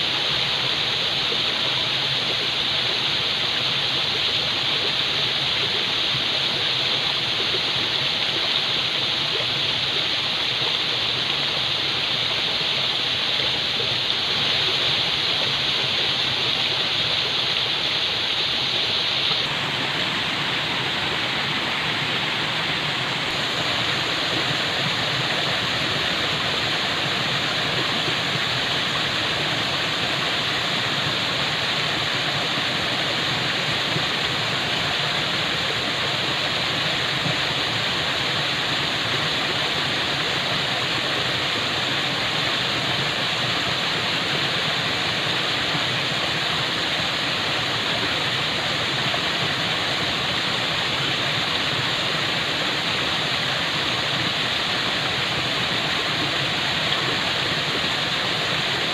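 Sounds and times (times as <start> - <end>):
falling water rushing: 0.0 - 58.9.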